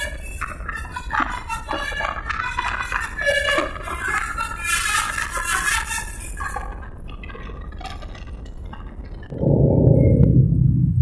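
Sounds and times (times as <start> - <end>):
low rumble: 9.2 - 11.0.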